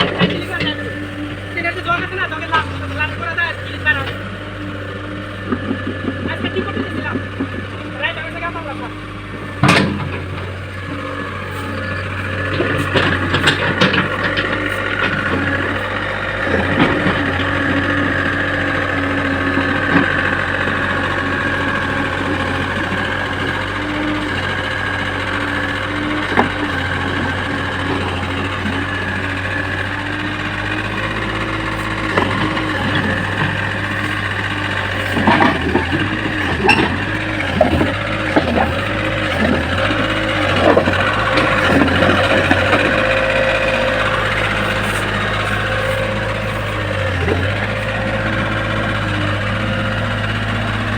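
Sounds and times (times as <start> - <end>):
diesel engine under load: 0.0 - 50.9
knocks and clunks: 0.0 - 50.9.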